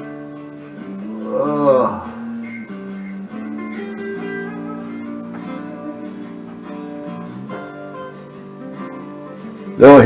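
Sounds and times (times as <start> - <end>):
guitar playing chords: 0.0 - 10.0.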